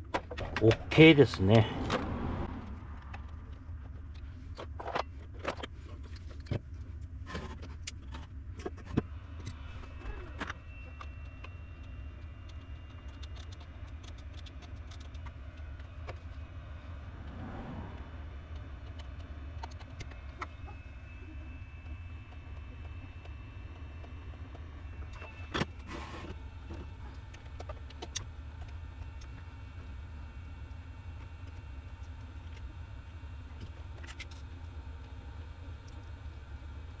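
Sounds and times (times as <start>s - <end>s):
steady low hum: 0.0s - 37.0s
faint high whine: 15.8s - 26.3s.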